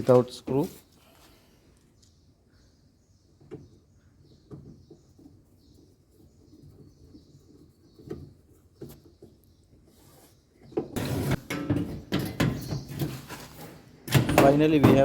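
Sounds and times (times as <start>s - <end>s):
metal panel clattering and scraping: 10.8s - 15.0s.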